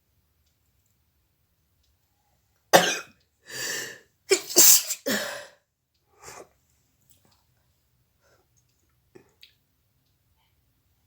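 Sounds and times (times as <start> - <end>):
woman sneezing and coughing: 2.8 - 5.5.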